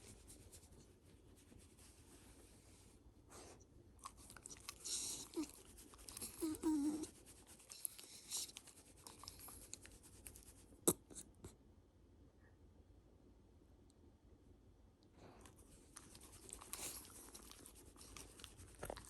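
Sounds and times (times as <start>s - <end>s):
dog nasal vocal sound: 4.0s - 9.7s.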